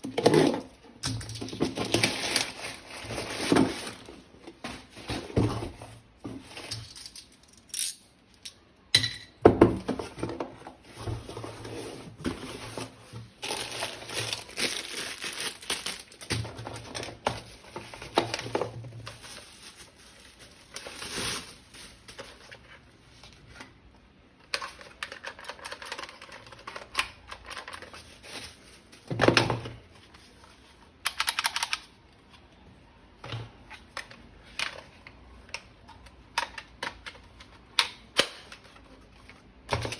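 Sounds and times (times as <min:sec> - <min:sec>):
plastic packaging crinkling: 0:01.3 - 0:04.6, 0:11.2 - 0:22.6
plastic parts clicking and knocking: 0:24.5 - 0:28.0, 0:31.0 - 0:31.9, 0:33.2 - 0:38.9.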